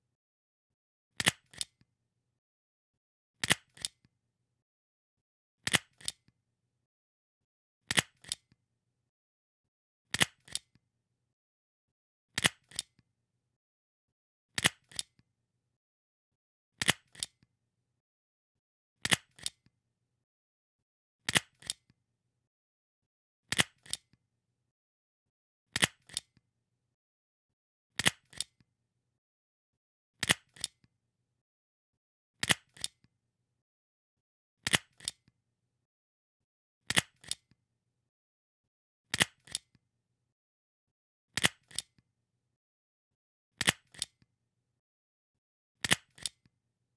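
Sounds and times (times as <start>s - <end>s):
stapler clicking: 3.4s - 4.0s, 5.7s - 6.2s, 16.8s - 17.3s, 30.2s - 30.8s, 32.4s - 33.0s, 34.7s - 35.2s, 36.9s - 37.4s, 39.1s - 39.6s, 41.4s - 41.9s, 45.8s - 46.4s.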